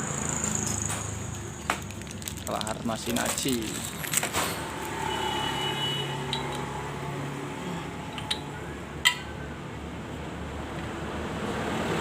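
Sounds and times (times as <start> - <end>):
metallic clicks of engine parts: 8.1 - 9.3.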